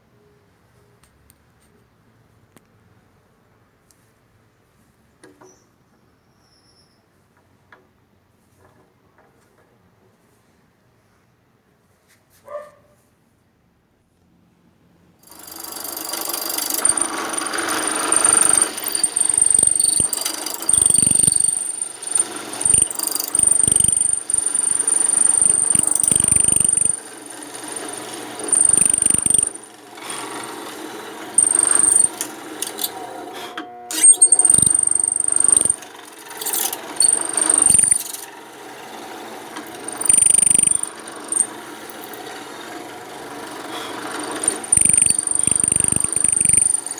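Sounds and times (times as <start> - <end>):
electric drill boring into wood: 15.2 - 33.3, 33.9 - 46.9.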